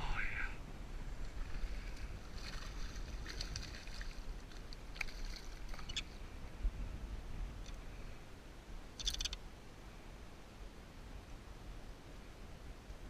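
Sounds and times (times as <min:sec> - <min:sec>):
wind rumble on microphone: 0:00.0 - 0:09.3
creek water splashing: 0:01.1 - 0:06.2
faint clicks: 0:07.6 - 0:07.8, 0:09.0 - 0:09.4.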